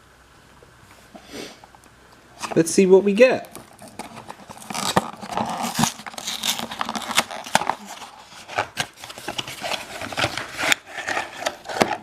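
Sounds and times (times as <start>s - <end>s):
foil wrapper crinkling and tearing: 3.5s - 12.0s.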